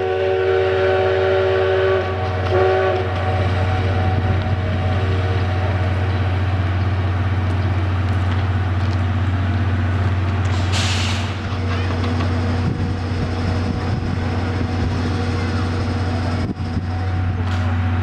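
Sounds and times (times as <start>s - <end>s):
locomotive low drone: 0.0s - 18.0s
air brake hiss: 10.5s - 11.4s.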